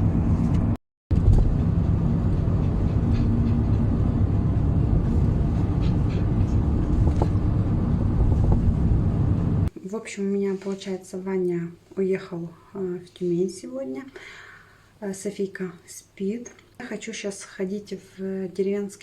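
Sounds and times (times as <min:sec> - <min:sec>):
car engine and road rumble: 0:00.0 - 0:09.7
low hum: 0:00.0 - 0:09.7.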